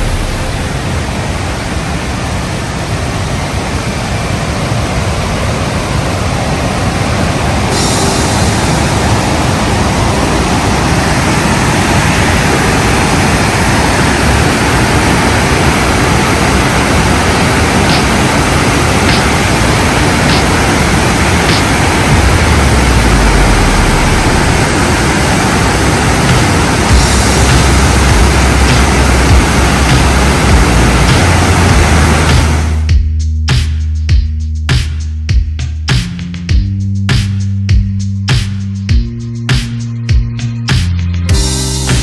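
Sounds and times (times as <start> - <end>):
waterfall rushing: 0.0 - 32.9.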